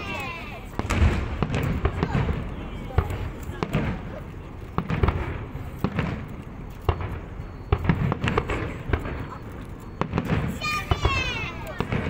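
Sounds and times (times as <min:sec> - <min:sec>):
fireworks bangs and cracks: 0:00.0 - 0:12.0.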